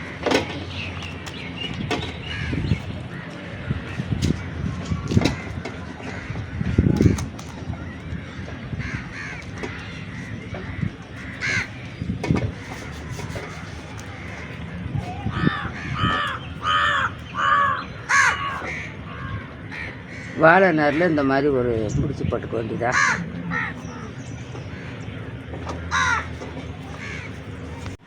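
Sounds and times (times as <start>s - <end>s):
crow cawing: 7.9s - 11.9s, 15.2s - 21.3s, 22.9s - 24.1s, 25.8s - 27.4s.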